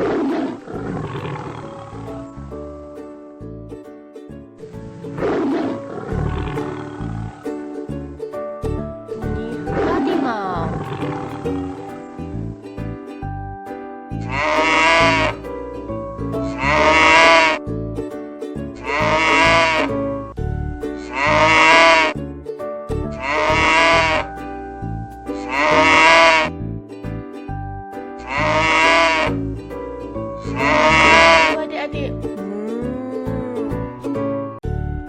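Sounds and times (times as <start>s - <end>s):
children's music: 0.0s - 35.0s
farm animal bleating: 14.2s - 15.4s, 16.4s - 17.6s, 18.8s - 19.9s, 21.0s - 22.2s, 23.2s - 24.2s, 25.3s - 26.5s, 28.2s - 29.4s, 30.4s - 31.7s.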